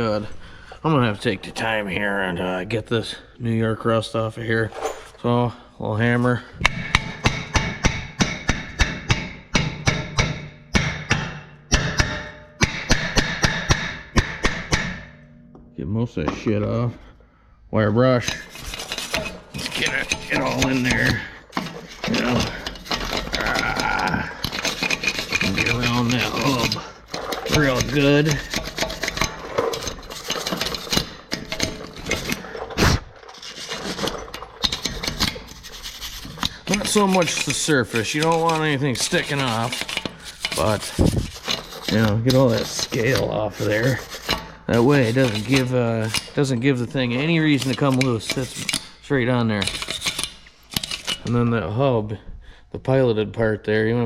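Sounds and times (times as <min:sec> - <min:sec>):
hammer striking steel: 0:06.6 - 0:15.8
wire brush scrubbing metal: 0:18.1 - 0:51.3.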